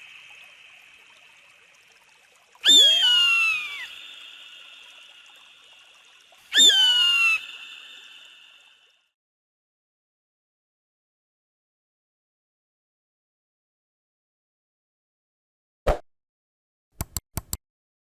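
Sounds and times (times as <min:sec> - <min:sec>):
eagle screaming: 0:02.6 - 0:04.0, 0:06.5 - 0:07.6.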